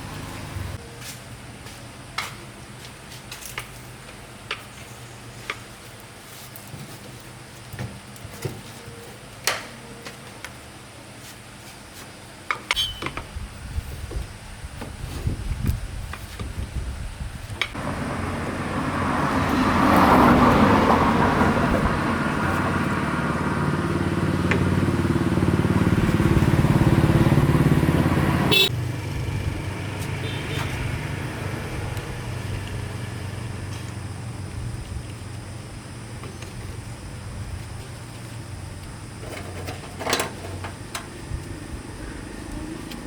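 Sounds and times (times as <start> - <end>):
engine running: 0.0 - 0.8, 17.8 - 34.7.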